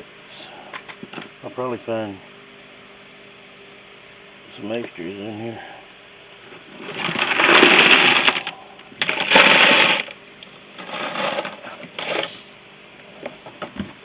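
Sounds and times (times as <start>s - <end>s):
metal bits rattling in container: 6.8s - 12.6s.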